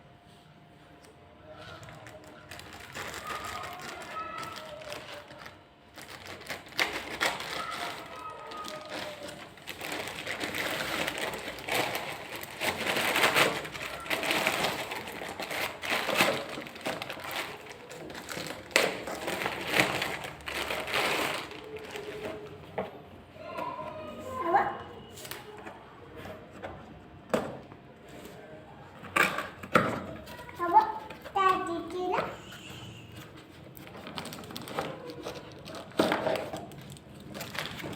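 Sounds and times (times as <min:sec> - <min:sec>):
packaging rustling and crinkling: 0:01.6 - 0:22.6, 0:32.6 - 0:37.9.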